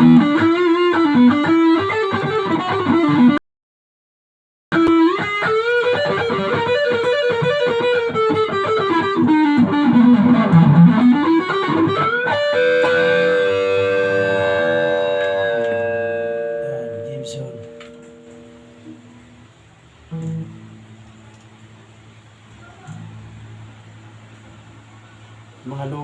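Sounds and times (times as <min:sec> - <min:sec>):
electric guitar melody and chord: 0:00.0 - 0:03.4, 0:04.7 - 0:21.8.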